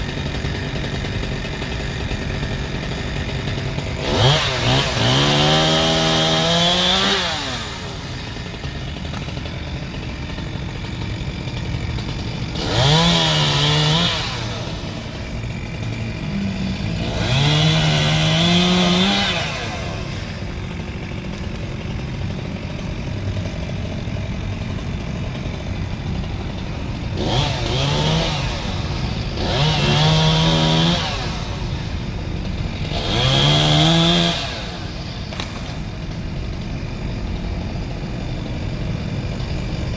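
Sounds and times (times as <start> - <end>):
chainsaw idling and revving: 0.0 - 39.9.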